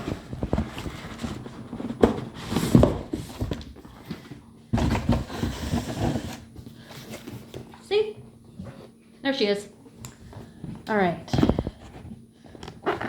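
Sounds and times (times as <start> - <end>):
cardboard box rustling: 0.0 - 7.5.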